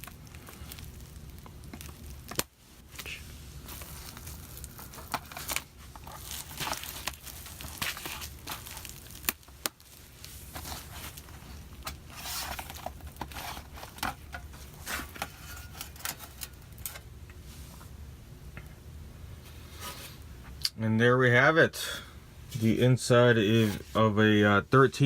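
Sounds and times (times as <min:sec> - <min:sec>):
laptop panel scraping and rustling: 0:10.2 - 0:16.9, 0:19.4 - 0:20.2, 0:23.4 - 0:24.0.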